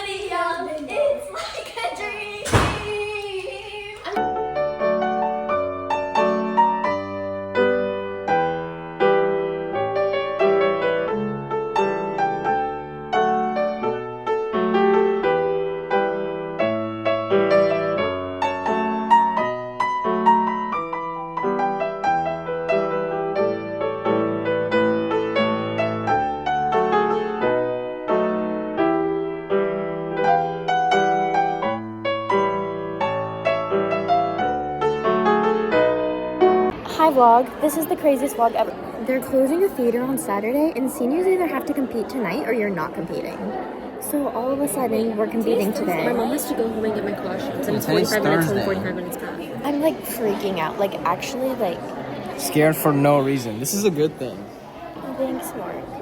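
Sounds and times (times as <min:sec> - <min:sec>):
solo piano music: 0:04.2 - 0:36.8.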